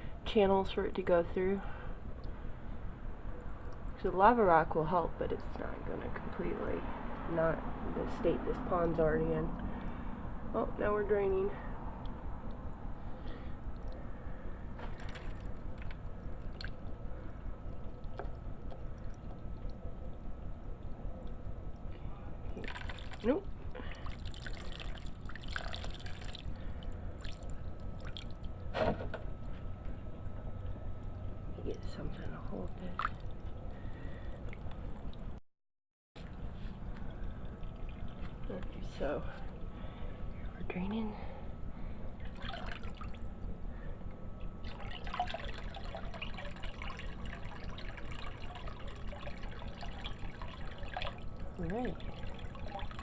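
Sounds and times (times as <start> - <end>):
pump humming: 0.0 - 35.4, 36.2 - 53.0
water trickling and draining: 12.0 - 28.7, 30.1 - 35.4, 36.2 - 40.4, 42.2 - 43.9, 44.5 - 53.0
water dripping: 14.9 - 28.7, 44.6 - 53.0.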